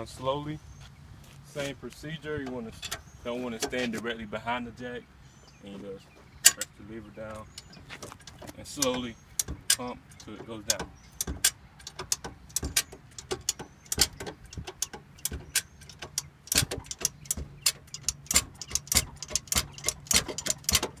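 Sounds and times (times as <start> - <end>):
car jack metallic clicks: 2.4 - 4.0, 6.4 - 21.0.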